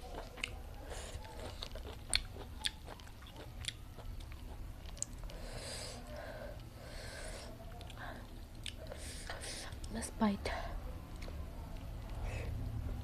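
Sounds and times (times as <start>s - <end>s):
person chewing with wet smacks: 0.0s - 5.5s, 7.6s - 10.0s, 11.1s - 13.0s.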